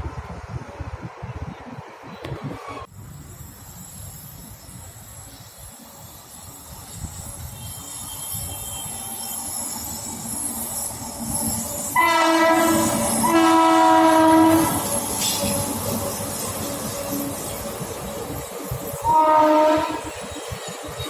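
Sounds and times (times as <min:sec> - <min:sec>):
train rumbling on track: 0:00.0 - 0:21.0
locomotive horn blasts: 0:12.0 - 0:14.8, 0:19.0 - 0:20.2.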